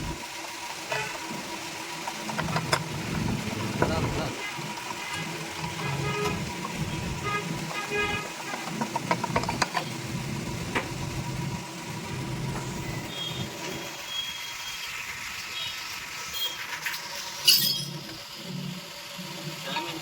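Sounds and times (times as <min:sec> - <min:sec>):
metal tools clinking: 0:17.4 - 0:18.0.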